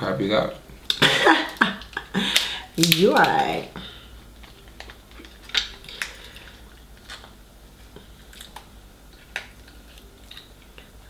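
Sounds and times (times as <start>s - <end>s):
crab shells cracking: 0.9s - 3.7s, 4.4s - 7.4s.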